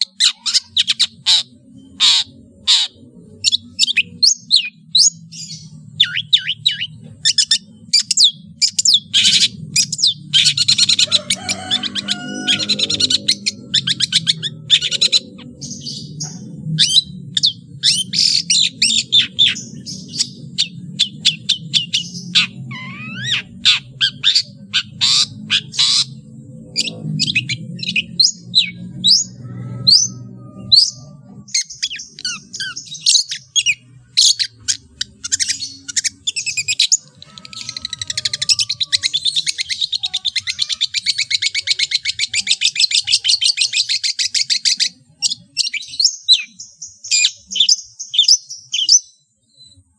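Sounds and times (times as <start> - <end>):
bird singing chirps and whistles: 0.0 - 49.8.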